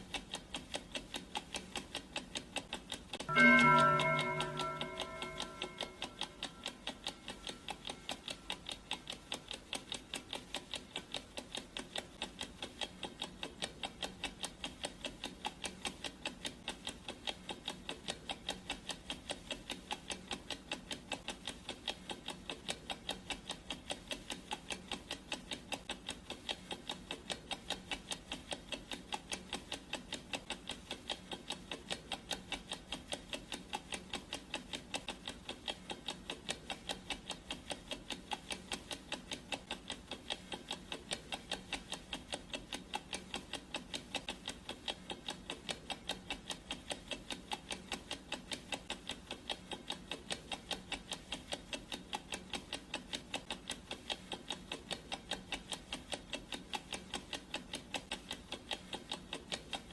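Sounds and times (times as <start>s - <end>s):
clock ticking: 0.0s - 59.9s.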